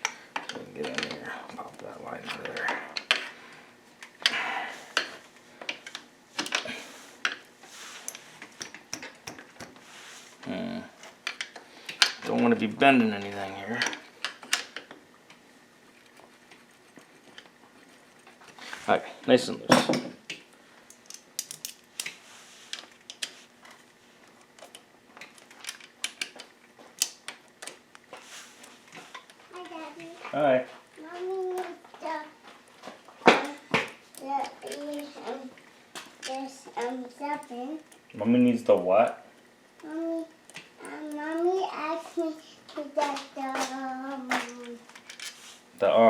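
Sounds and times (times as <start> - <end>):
metallic tool clicks and taps: 8.1 - 9.7.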